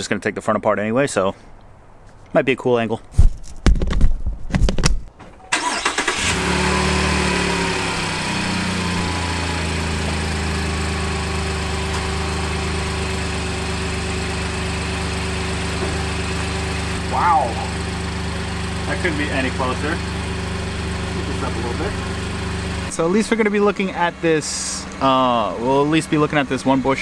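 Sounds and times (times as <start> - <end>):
pickup engine starting and idling: 5.4 - 23.1.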